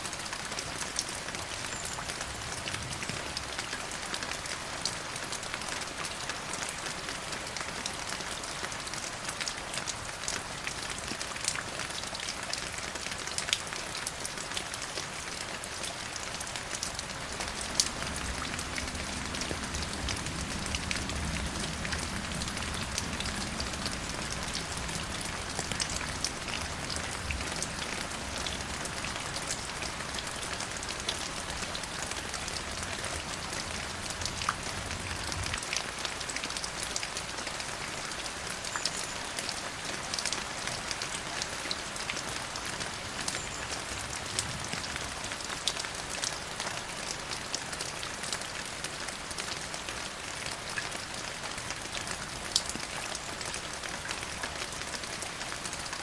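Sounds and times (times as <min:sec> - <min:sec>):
steady rain with tapping drops: 0:00.0 - 0:56.0.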